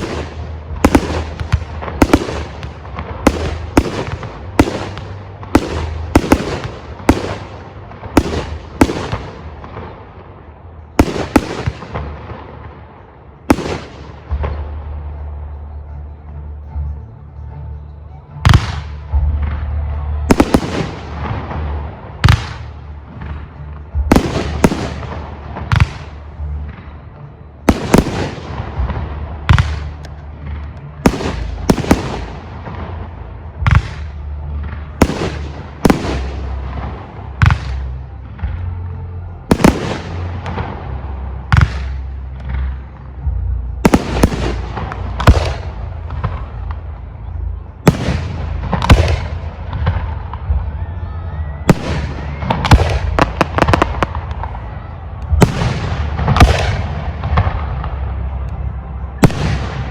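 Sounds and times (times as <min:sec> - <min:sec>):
steady low rumble: 0:00.0 - 0:59.9.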